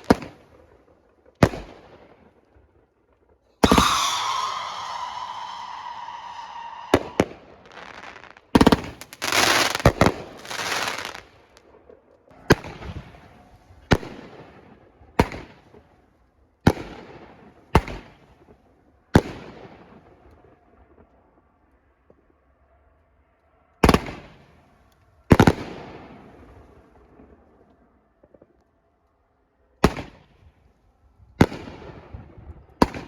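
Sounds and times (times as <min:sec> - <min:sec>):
firework bangs: 0:00.0 - 0:00.7, 0:03.6 - 0:11.7, 0:31.4 - 0:33.0
firework crackling: 0:03.6 - 0:11.7.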